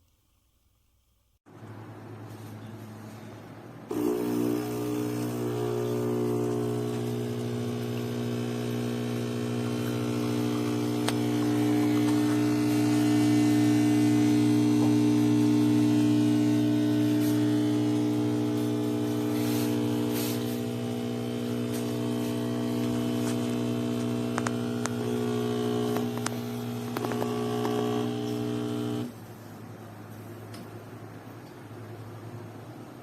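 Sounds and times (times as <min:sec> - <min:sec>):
espresso machine pump humming: 0:03.9 - 0:29.2.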